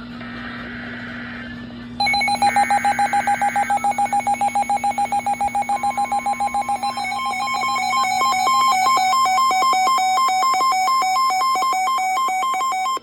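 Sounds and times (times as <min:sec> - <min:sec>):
fast electronic beeping: 0:02.0 - 0:13.0
steady high electronic tone: 0:02.0 - 0:13.0.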